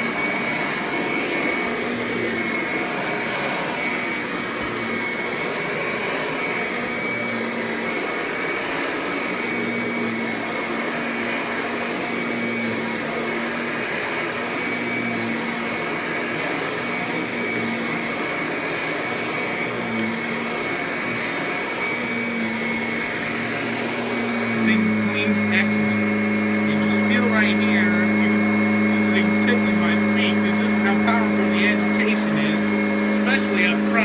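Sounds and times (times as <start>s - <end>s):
vacuum cleaner running: 0.0s - 34.0s.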